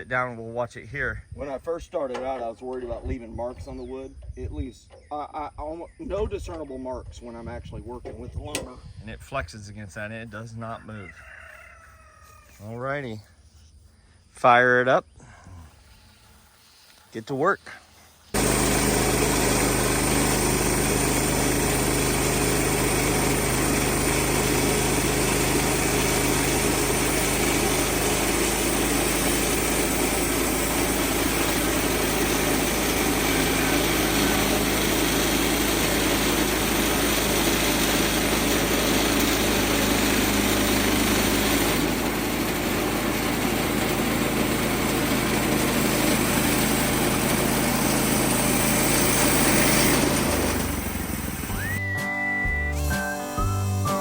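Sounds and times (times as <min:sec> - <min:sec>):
sawmill gas engine running: 0:18.3 - 0:54.0.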